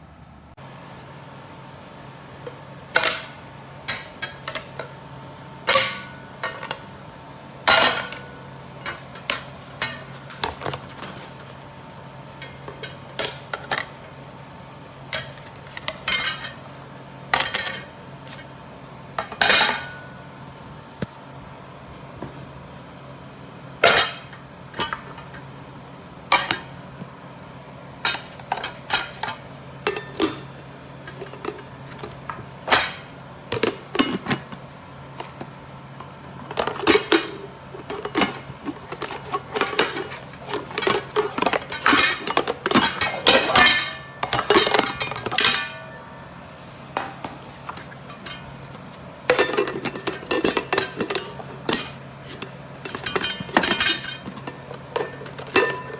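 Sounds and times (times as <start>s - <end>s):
pots and pans clinking: 5.6s - 6.9s, 7.7s - 11.6s, 15.1s - 16.7s, 17.3s - 18.6s, 19.2s - 20.3s, 23.8s - 25.5s, 26.3s - 27.2s, 28.0s - 34.6s, 35.2s - 46.3s, 46.9s - 55.9s.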